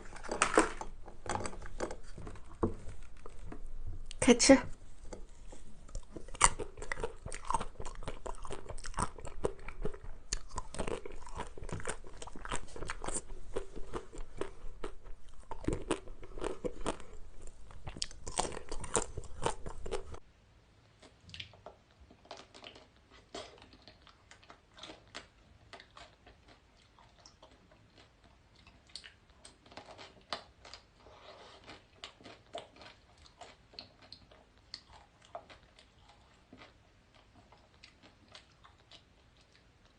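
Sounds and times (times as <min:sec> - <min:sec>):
crunchy bites and chewing: 0:00.0 - 0:04.2, 0:05.1 - 0:20.2.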